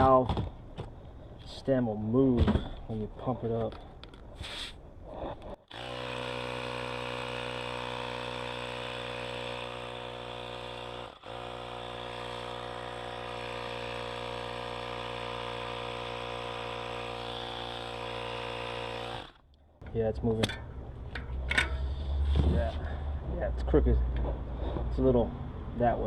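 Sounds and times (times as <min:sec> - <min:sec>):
air compressor running: 0:05.7 - 0:19.4.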